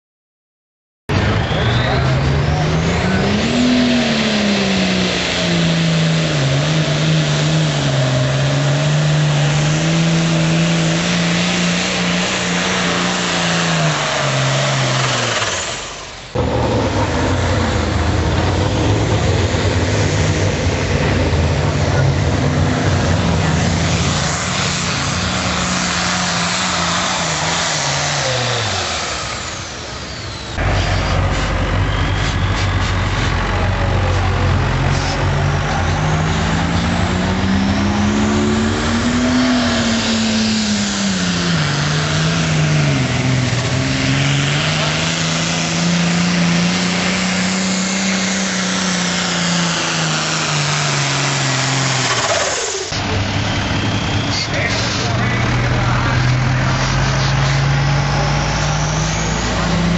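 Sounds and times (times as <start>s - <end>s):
tractor engine running under load: 40.9s - 59.9s.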